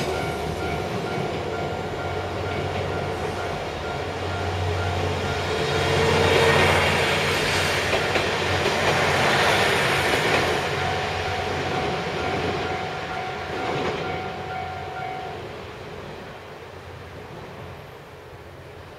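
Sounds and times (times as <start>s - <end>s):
train wheels clacking over rail joints: 4.8s - 12.8s.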